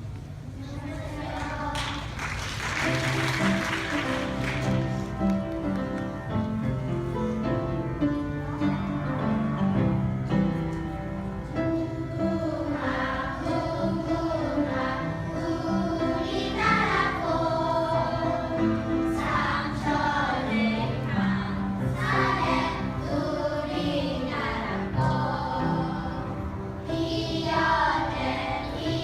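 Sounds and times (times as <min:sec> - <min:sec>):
piano accompaniment: 0:02.0 - 0:29.0
children's choir singing: 0:11.6 - 0:29.0.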